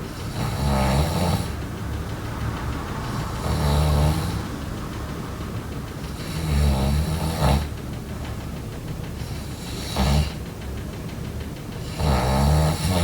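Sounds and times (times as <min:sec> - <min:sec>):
person snoring: 0:00.1 - 0:01.6, 0:03.0 - 0:04.4, 0:06.0 - 0:07.7, 0:09.5 - 0:10.4, 0:11.9 - 0:13.0.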